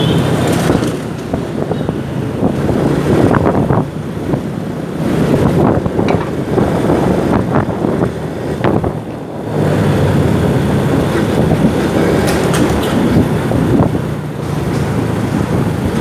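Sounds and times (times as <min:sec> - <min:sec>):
road and traffic noise: 0:00.0 - 0:16.0.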